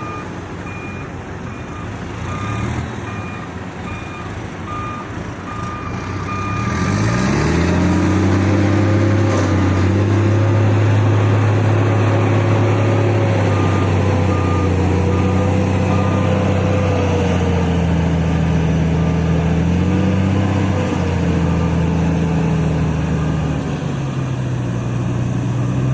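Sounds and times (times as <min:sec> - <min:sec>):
reversing alarm beeping: 0:00.0 - 0:07.6, 0:12.0 - 0:17.2
heavy diesel engine revving: 0:00.0 - 0:25.9.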